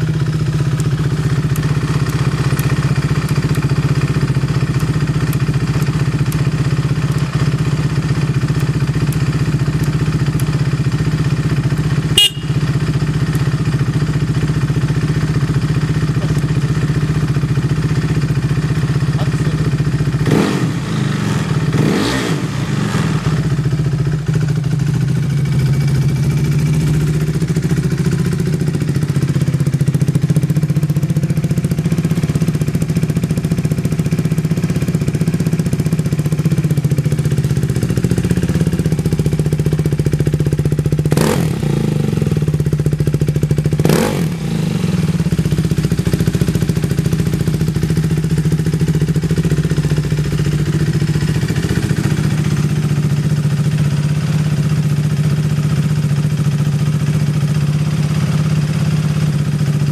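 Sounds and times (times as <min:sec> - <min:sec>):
motorcycle engine idling: 0:00.0 - 0:59.9
throttle blips: 0:12.2 - 0:12.6.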